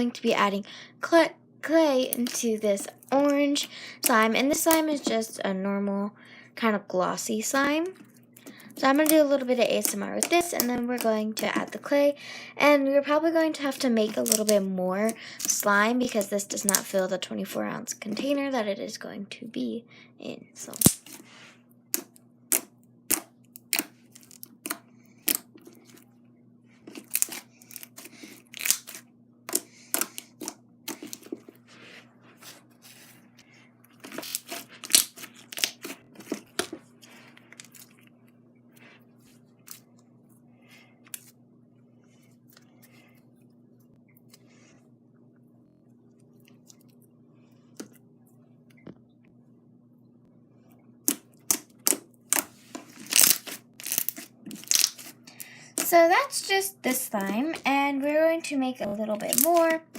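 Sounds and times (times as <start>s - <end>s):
slime squished by hand: 51.1s - 55.2s.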